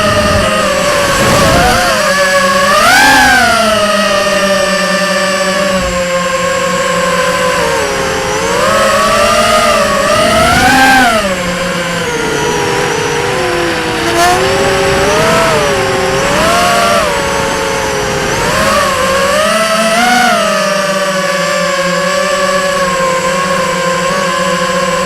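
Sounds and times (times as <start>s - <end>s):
drone motors and propellers whining: 0.0s - 25.0s.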